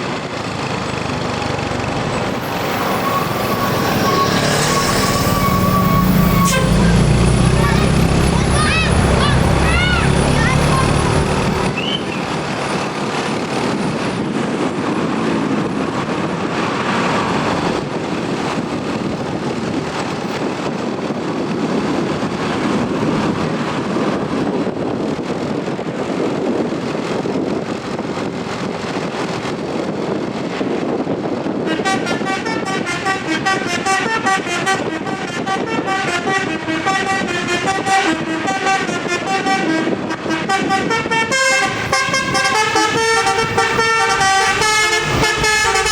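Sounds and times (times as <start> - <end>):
vehicle and road noise: 0.0 - 45.9
bus horn playing a quick tune: 2.4 - 10.9, 31.7 - 45.9.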